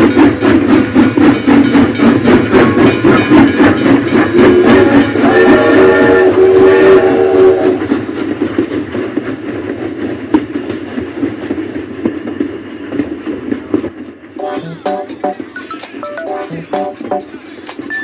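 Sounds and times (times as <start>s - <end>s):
toy train rattling and chugging: 0.0s - 6.4s
toy train electronic horn: 4.5s - 7.8s.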